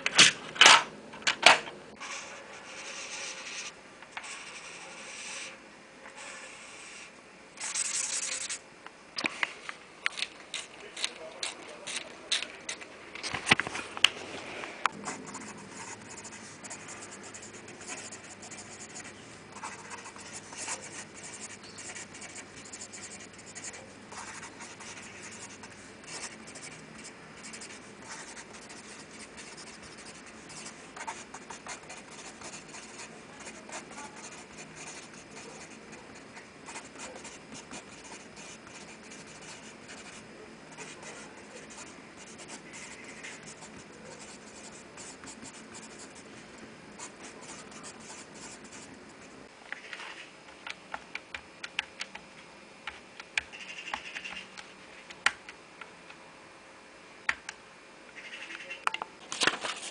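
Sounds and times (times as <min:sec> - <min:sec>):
dry scratching on a surface: 0:07.6 - 0:08.6.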